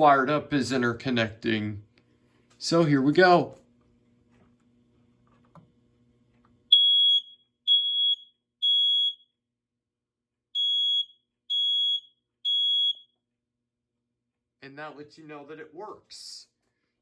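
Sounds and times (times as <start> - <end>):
smoke alarm beeps: 6.7 - 9.4, 10.6 - 13.2.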